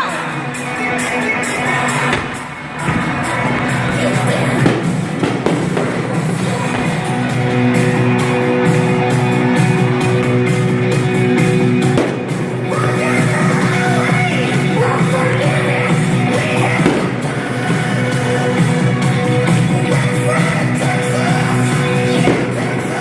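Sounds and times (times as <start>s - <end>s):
rock music with singing: 0.0s - 23.0s.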